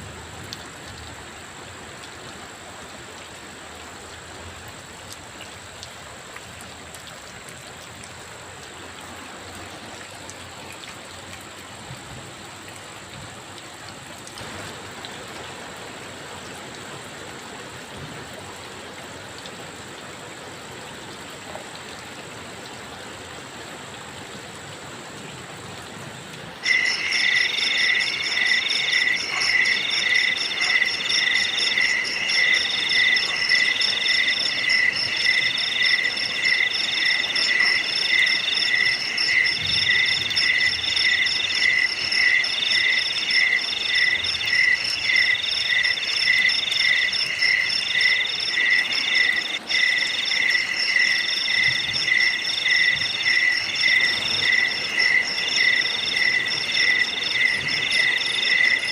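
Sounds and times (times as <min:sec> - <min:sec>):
faint hiss of water: 0:00.0 - 0:58.9
crickets and insects chirping: 0:26.6 - 0:58.9.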